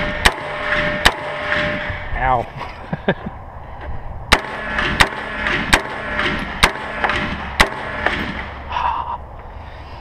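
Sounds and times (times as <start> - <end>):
gunshots: 0.0 - 2.0, 4.3 - 8.6.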